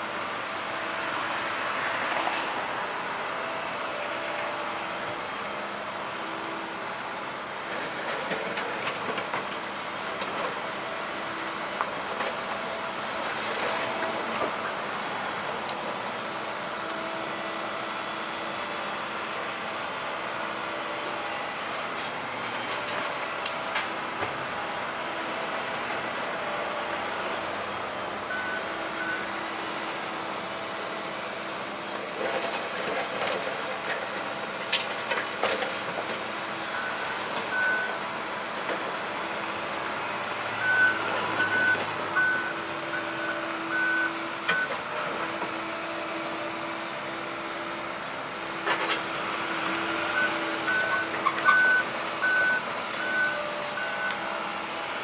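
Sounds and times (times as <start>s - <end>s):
construction machinery engine running: 0.0s - 55.0s
reversing alarm beeps: 28.3s - 29.3s, 36.7s - 38.0s, 40.6s - 44.7s, 50.1s - 54.3s.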